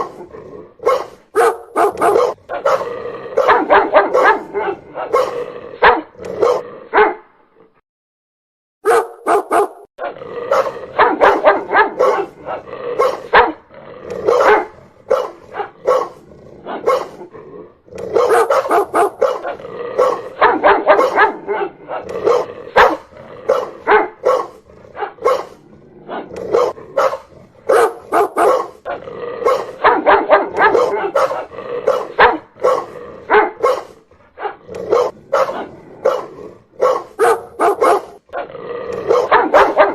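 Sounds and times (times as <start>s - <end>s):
dog barking loudly: 0.8s - 7.3s, 8.8s - 17.3s, 18.0s - 39.9s.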